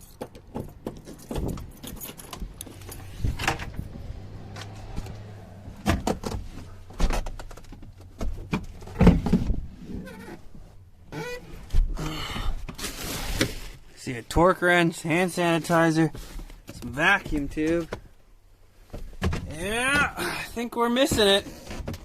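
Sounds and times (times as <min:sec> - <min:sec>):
rummaging through metal tools: 0:01.0 - 0:03.8.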